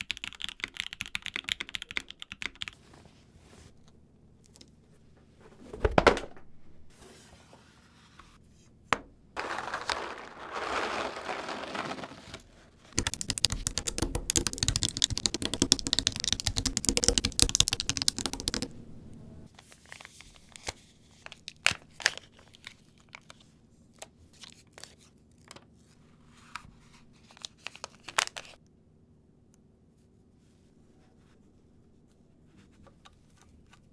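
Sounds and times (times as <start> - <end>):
packaging crinkling and tearing: 9.4 - 13.7
keyboard parts clicking: 13.0 - 18.8.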